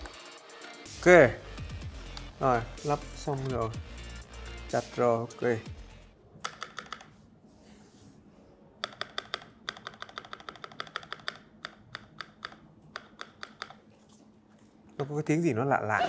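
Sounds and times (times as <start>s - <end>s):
mechanical keyboard typing: 6.4s - 7.1s, 8.8s - 13.8s.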